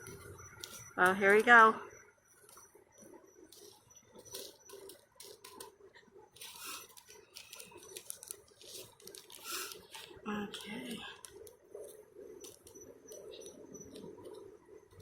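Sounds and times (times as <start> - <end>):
fingers scraping pepper seeds: 3.5 - 15.0.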